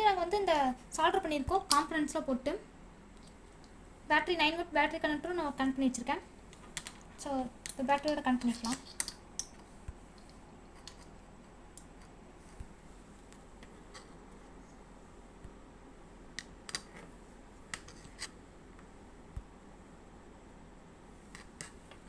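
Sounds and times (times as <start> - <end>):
steady low hiss: 0.0 - 22.0
small clicks and taps of handling: 6.5 - 12.7.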